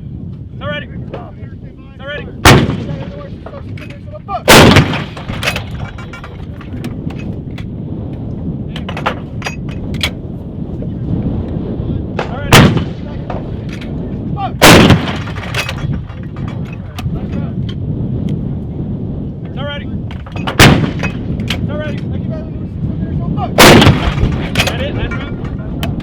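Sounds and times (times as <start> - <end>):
steady low rumble: 0.0 - 26.0
artillery guns firing: 2.4 - 3.9, 4.5 - 7.7, 12.2 - 13.7, 14.6 - 17.3, 20.1 - 21.7, 23.6 - 26.0
faint booms and cracks: 2.4 - 7.7, 12.2 - 14.0, 14.6 - 17.4, 20.1 - 21.9, 23.6 - 26.0.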